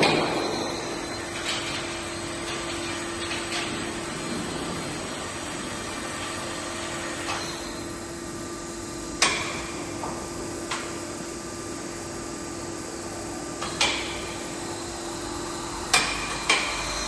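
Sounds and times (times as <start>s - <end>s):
sharp ringing knocks: 0.0s - 1.6s
steady machine hum: 0.0s - 17.0s.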